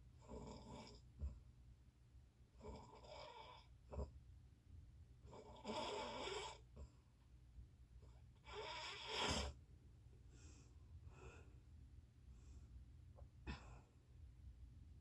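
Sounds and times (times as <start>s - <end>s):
soft breathing: 8.6s - 14.1s.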